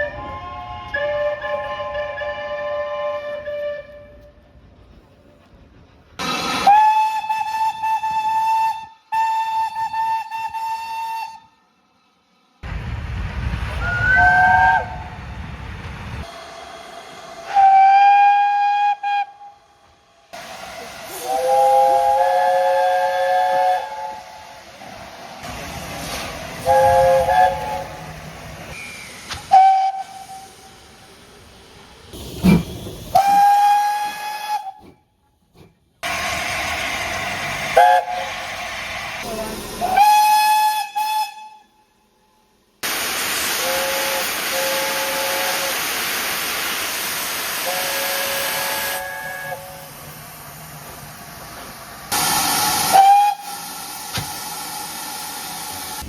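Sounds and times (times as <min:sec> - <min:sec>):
steam locomotive whistle blasts: 0:00.0 - 0:04.4, 0:06.2 - 0:11.6, 0:13.8 - 0:15.2, 0:16.2 - 0:24.6, 0:26.6 - 0:30.8, 0:32.4 - 0:35.0, 0:36.0 - 0:42.1, 0:42.8 - 0:46.4, 0:47.4 - 0:50.0, 0:52.1 - 0:55.4
hiss of escaping steam: 0:13.8 - 0:35.0, 0:36.0 - 0:41.5, 0:42.8 - 0:56.0.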